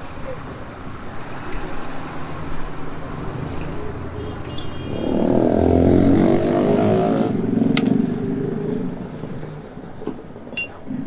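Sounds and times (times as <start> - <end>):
metallic clinks of tools: 7.9 - 8.4, 10.5 - 10.8.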